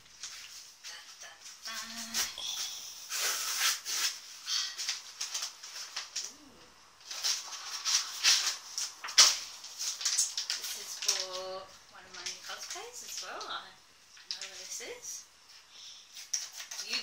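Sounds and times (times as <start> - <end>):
packaging crinkling and rustling: 3.1 - 6.4, 7.0 - 13.5, 16.1 - 17.0
packaging ripping: 3.1 - 6.4, 7.0 - 11.5.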